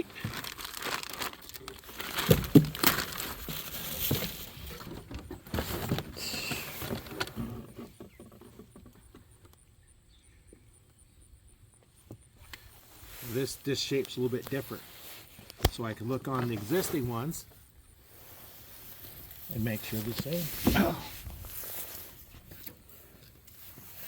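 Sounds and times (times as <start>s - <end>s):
plastic packaging rustling: 0.0s - 7.2s.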